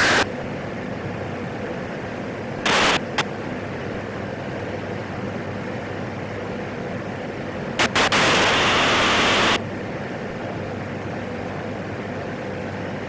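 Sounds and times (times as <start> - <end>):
radio static burst: 0.0 - 0.2, 2.7 - 3.2, 7.8 - 9.6
radio click: 2.7 - 3.2, 7.8 - 9.6
turboprop engine drone: 7.8 - 9.6.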